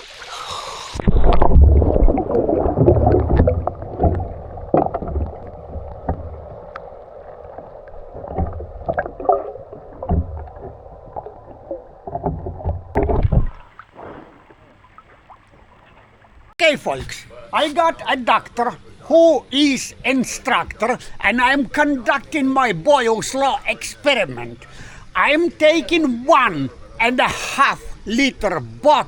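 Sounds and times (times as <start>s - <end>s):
muffled underwater splashing and bubbling: 0.0s - 16.5s.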